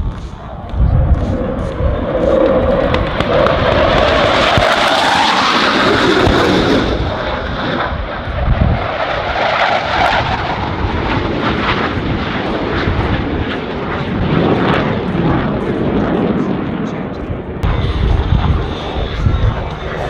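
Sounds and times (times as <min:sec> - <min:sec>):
jet engines at high power: 0:00.0 - 0:20.0.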